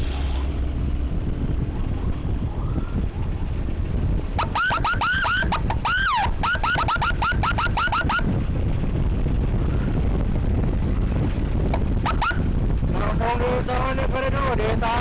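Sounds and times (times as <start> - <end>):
wind and road rumble: 0.0 - 15.0
electronic siren chirping yelp: 4.4 - 8.3, 12.0 - 12.4.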